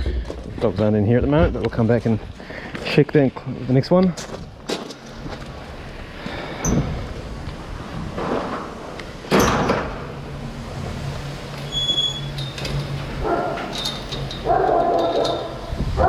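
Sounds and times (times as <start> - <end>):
dogs barking: 13.2 - 13.8, 14.4 - 16.0.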